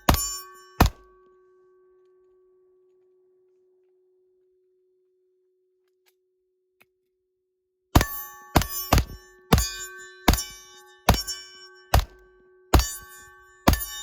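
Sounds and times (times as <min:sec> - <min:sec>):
faint steady tone: 0:00.0 - 0:06.0.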